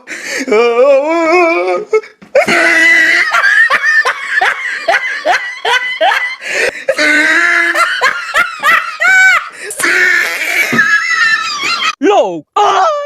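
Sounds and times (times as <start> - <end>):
person laughing hard: 2.4 - 12.0.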